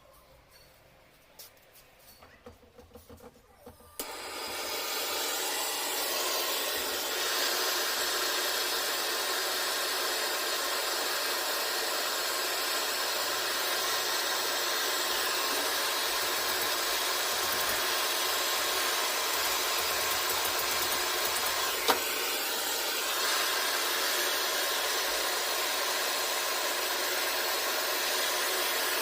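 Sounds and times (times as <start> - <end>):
gas torch flame hissing: 4.0 - 29.0.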